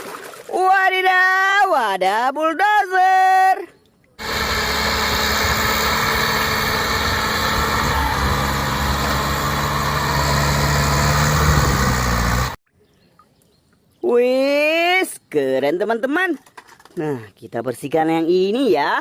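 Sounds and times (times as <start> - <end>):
heavy engine running: 4.2 - 12.6.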